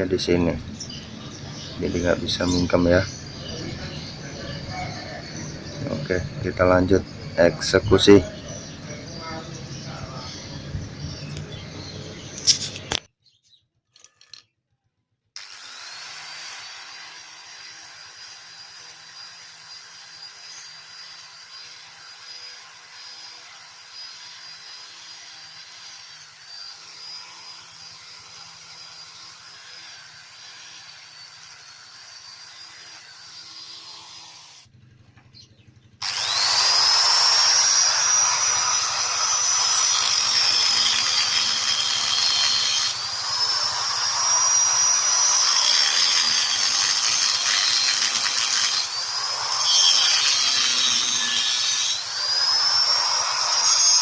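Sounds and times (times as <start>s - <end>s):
power tool whining on metal: 0.0s - 13.0s, 15.4s - 34.7s, 36.0s - 54.0s
power tool running: 15.4s - 34.7s, 36.0s - 54.0s.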